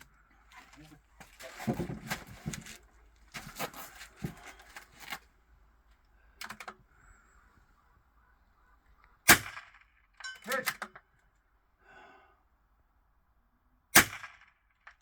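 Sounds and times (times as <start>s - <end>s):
rifle clicks and rattles: 2.4s - 5.3s, 6.0s - 6.8s, 9.6s - 11.2s.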